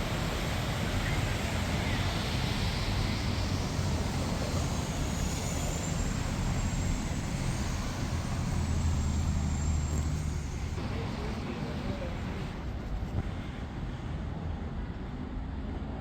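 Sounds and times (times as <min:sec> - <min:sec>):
road noise: 0:00.0 - 0:16.0.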